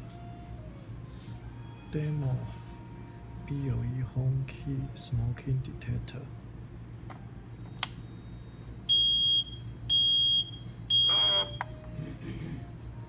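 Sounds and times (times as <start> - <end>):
smoke alarm beeps: 7.7 - 11.7
click: 7.8 - 8.0.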